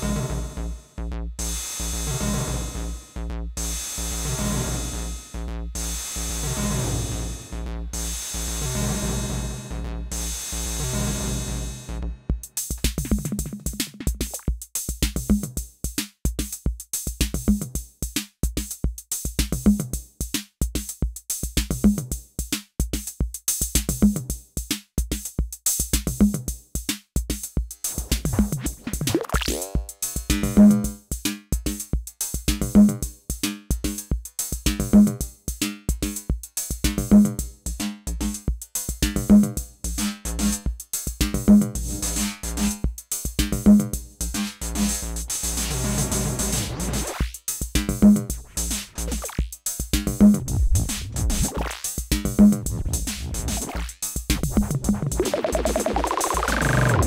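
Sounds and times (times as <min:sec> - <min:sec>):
drum machine kick and hi-hat beat: 0:12.1 - 0:57.0
low pitched drum hit: 0:27.9 - 0:29.1, 0:50.2 - 0:51.6
effect sweep bending down in pitch: 0:50.4 - 0:51.8, 0:54.5 - 0:57.0.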